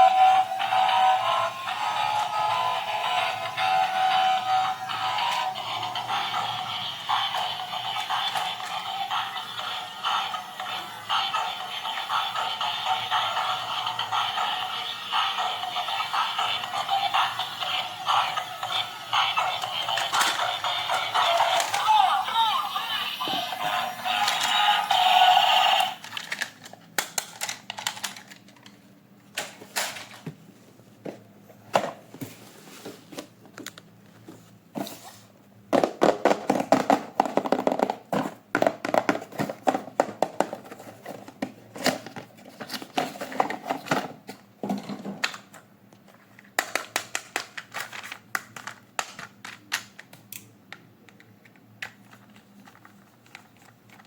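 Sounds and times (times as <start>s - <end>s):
music: 0.0s - 26.0s
plastic toys clicking and rattling: 0.5s - 28.8s, 44.7s - 50.5s.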